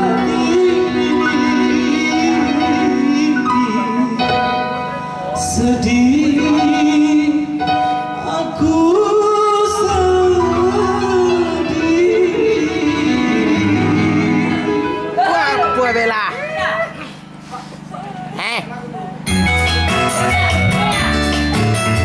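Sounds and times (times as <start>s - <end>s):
person singing long notes: 0.0s - 15.1s
sustained instrumental accompaniment: 0.0s - 16.8s, 19.1s - 22.0s.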